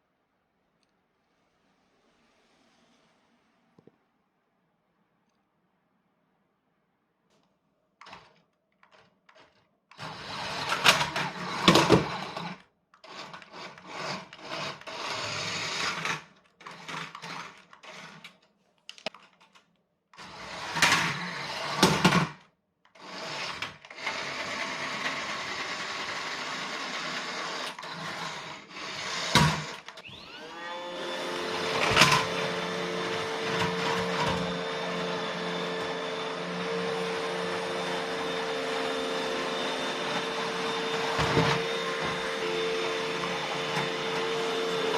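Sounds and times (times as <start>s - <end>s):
toy car electric motor whirring: 9.3s - 18.5s, 20.2s - 30.4s
robot vacuum motor humming: 23.0s - 44.9s.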